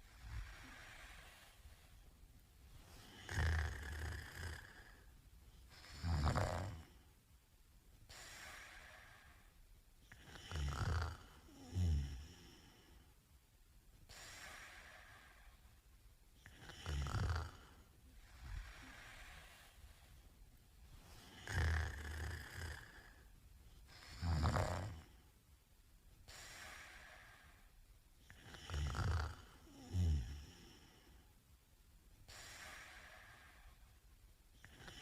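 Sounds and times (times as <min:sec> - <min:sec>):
breath noise: 0:00.0 - 0:05.8, 0:17.0 - 0:24.0, 0:32.2 - 0:34.0
man snoring: 0:03.0 - 0:05.0, 0:05.8 - 0:07.0, 0:10.1 - 0:12.8, 0:16.4 - 0:17.8, 0:21.2 - 0:23.2, 0:24.1 - 0:25.1, 0:28.3 - 0:31.0, 0:34.6 - 0:35.0.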